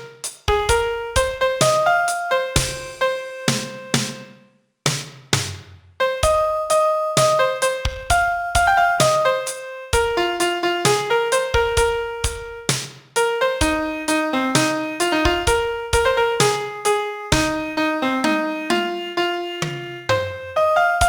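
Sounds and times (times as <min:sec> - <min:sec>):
piano melody over bass notes: 0:00.0 - 0:04.4, 0:06.0 - 0:21.0.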